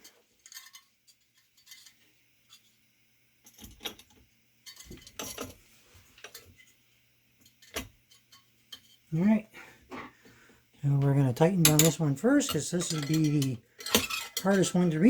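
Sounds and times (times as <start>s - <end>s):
light metal clicks and clinks: 11.6s - 14.8s.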